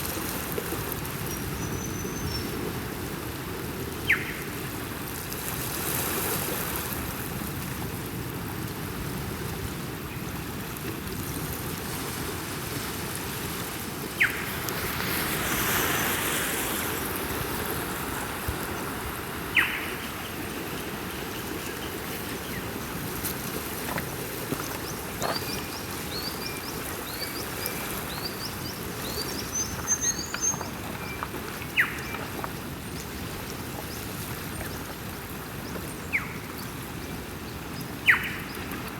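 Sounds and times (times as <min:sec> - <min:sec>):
ocean waves washing: 0:00.0 - 0:38.9
birds calling: 0:14.2 - 0:14.6, 0:18.6 - 0:35.0, 0:38.0 - 0:38.8.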